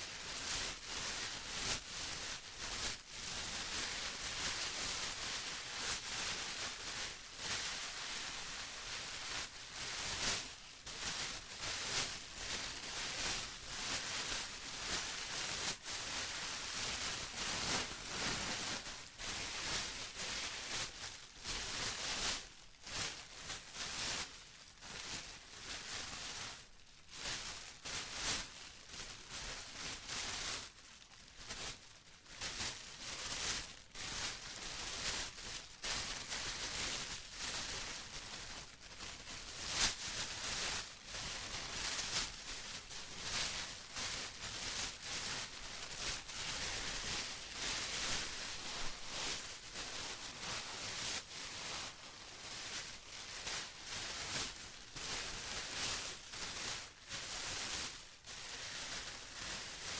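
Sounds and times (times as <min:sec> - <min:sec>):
plastic crinkling: 0:00.1 - 0:22.1, 0:37.4 - 0:59.9.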